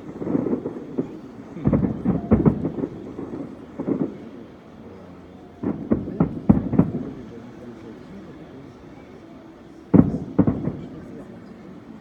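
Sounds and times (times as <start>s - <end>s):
fireworks booming: 0.0s - 4.8s, 5.6s - 7.7s, 9.9s - 11.4s.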